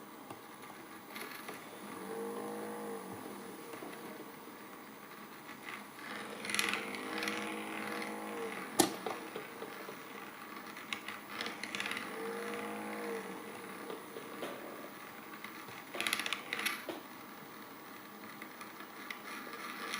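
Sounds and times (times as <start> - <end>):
magnetic stirrer whirring and rattling: 0.0 - 19.9
pitched hum: 1.5 - 15.3.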